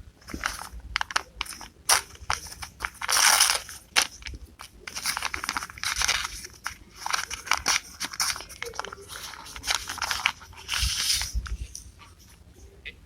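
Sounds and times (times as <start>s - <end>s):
paper crinkling and rustling: 0.2s - 12.5s.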